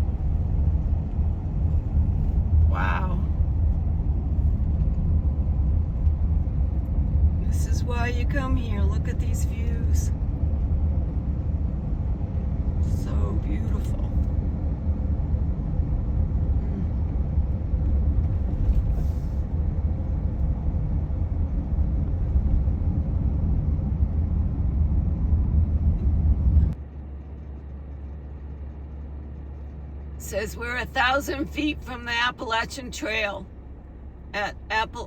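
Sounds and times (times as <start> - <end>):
vehicle road and engine noise: 0.0 - 35.0.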